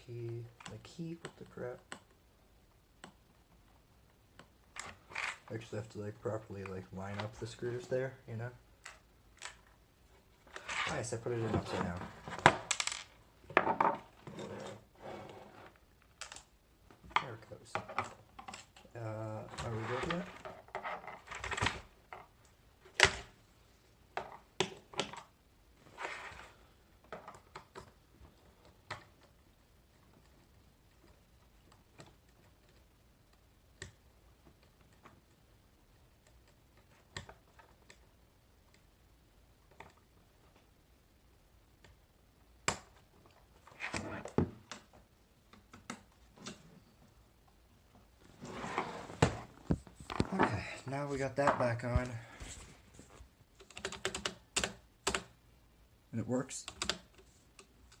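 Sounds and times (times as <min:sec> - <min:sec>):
plastic keyboard parts clicking: 0:53.6 - 0:55.4, 0:56.7 - 0:58.0.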